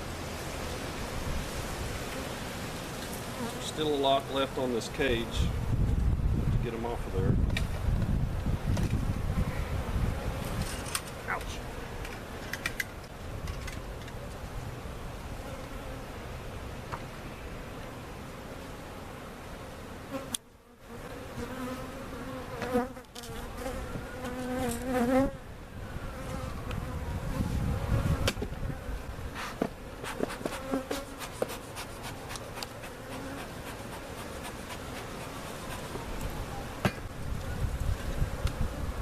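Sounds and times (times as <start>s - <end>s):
bees buzzing: 18.7s - 39.0s.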